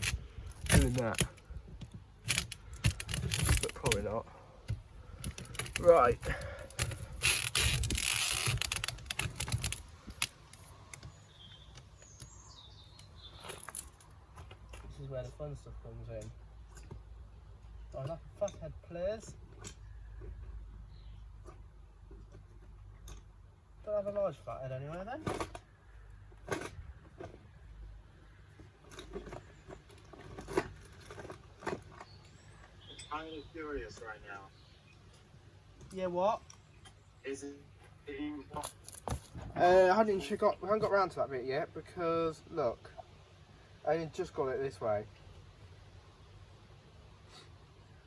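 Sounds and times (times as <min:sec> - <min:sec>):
tools clicking and knocking: 0:00.0 - 0:04.1
sharp clicks and knocks: 0:00.0 - 0:12.4.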